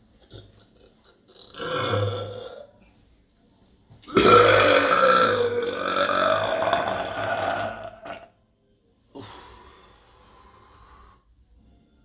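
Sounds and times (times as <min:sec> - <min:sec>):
long loud burp: 0:01.3 - 0:02.8, 0:04.1 - 0:08.3.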